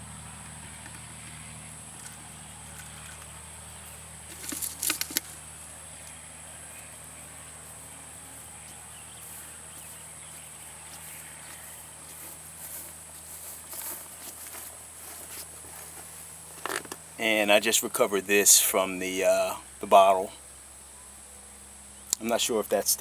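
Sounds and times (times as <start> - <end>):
low hum: 0.0 - 22.1
high-pitched insect drone: 0.0 - 22.8
sharp clicks: 4.3 - 5.4, 22.1 - 22.4.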